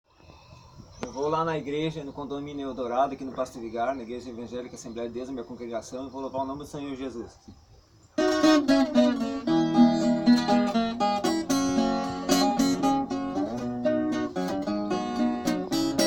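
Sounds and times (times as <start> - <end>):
guitar picked melody over chords: 8.2 - 16.0.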